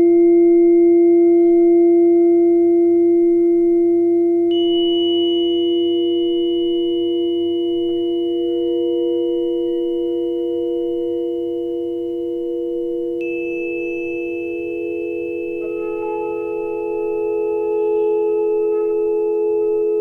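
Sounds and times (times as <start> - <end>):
layered chord of pure tones: 4.5 - 20.0.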